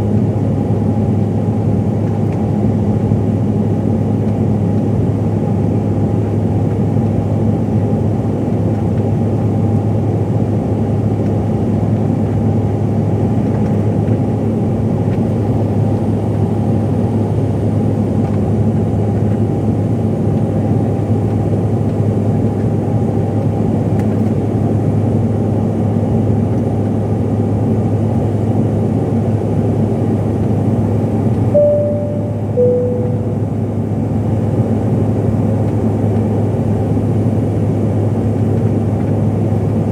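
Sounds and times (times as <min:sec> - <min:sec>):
aircraft cabin drone: 0:31.5 - 0:34.1
two-note cabin chime: 0:31.6 - 0:33.6.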